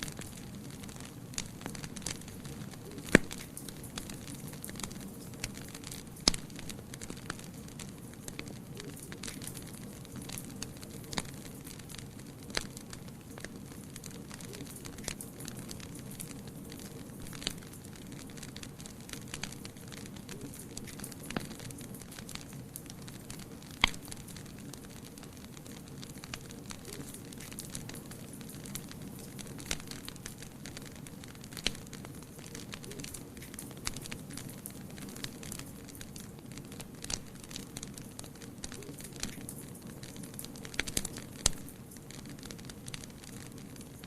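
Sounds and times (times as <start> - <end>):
wood fire crackling: 0.0 - 44.0.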